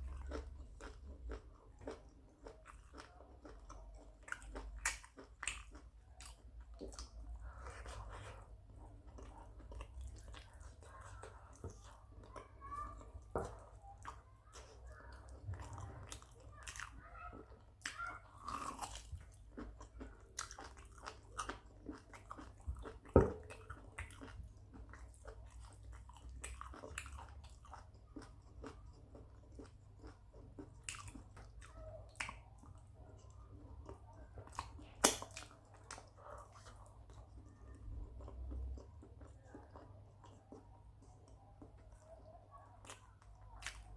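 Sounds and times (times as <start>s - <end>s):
person chewing food: 0.0s - 43.9s
wet mouth smacks: 35.0s - 36.0s.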